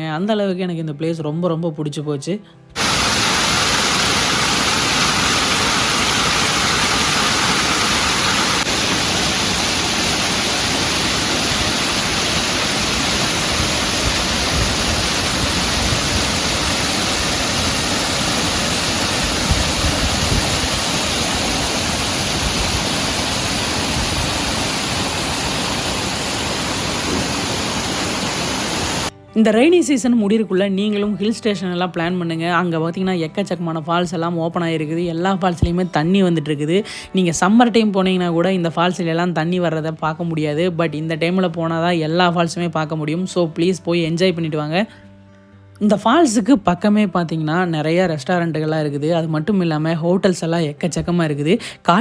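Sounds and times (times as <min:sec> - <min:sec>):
waterfall pouring over rocks: 0:02.8 - 0:29.1.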